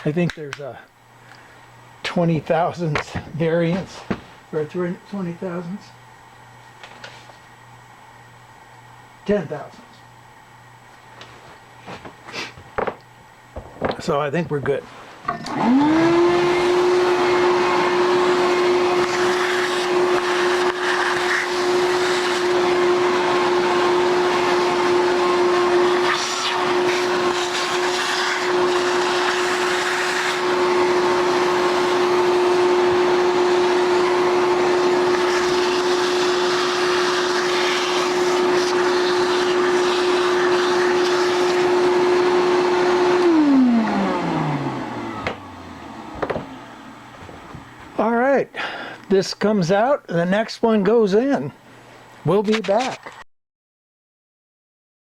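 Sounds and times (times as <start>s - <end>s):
electric motor whining: 15.4s - 47.9s.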